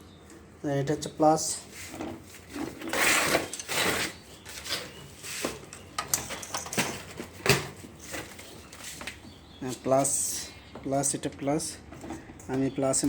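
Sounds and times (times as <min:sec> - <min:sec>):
rustling scrapes: 0:01.6 - 0:09.3.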